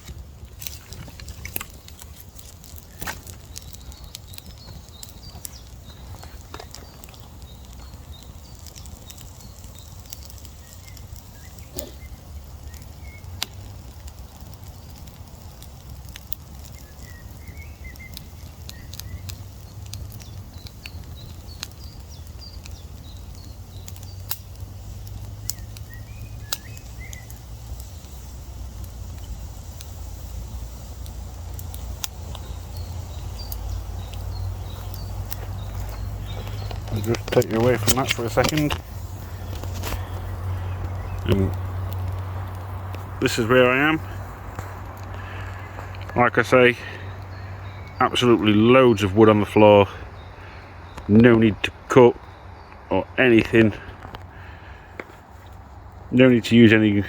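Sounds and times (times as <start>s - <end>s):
campfire crackling and popping: 0.0s - 57.0s
faint bird chirps: 2.8s - 13.4s, 16.6s - 30.7s, 31.7s - 42.0s, 45.1s - 53.1s
low rumble: 31.0s - 48.4s.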